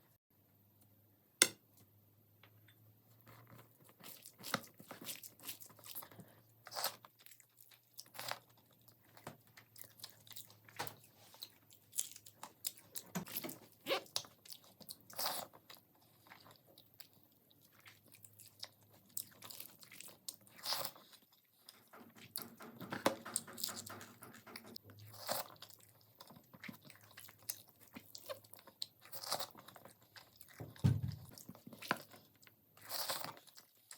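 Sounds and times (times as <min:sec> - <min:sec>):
crunchy food being chewed: 0:03.2 - 0:33.9.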